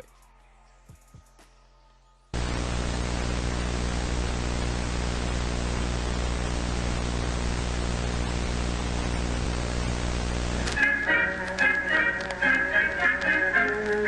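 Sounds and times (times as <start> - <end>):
low hum: 2.4 - 10.8
tv static hiss: 2.4 - 14.0.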